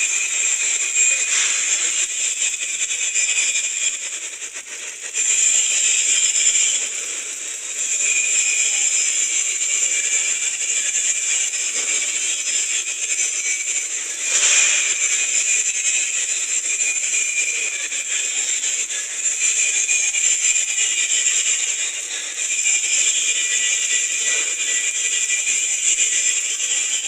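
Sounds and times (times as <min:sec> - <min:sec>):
welding arc crackling: 0:00.2 - 0:02.4, 0:13.8 - 0:16.6.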